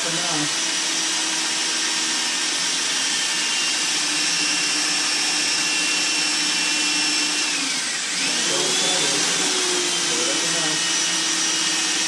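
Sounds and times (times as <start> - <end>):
electric drill boring into wood: 0.0 - 12.0.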